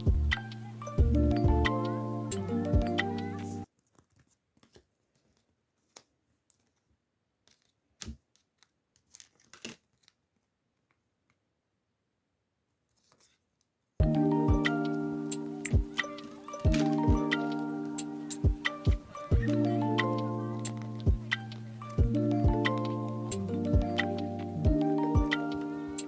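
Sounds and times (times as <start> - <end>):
background music: 0.0 - 3.7, 14.0 - 26.0
packaging clicking and crinkling: 3.7 - 11.0, 14.7 - 23.4.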